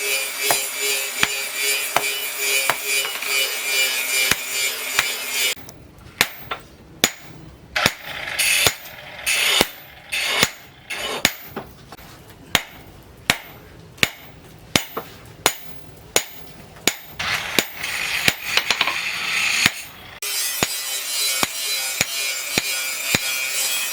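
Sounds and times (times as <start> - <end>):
hammer striking on anvil: 0.1 - 5.6, 6.2 - 11.7, 12.5 - 19.0, 19.6 - 23.9.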